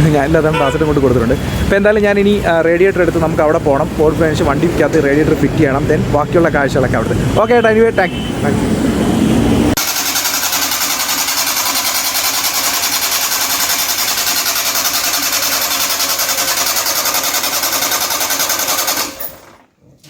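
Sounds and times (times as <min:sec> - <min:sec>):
small machine clattering: 0:09.8 - 0:19.6.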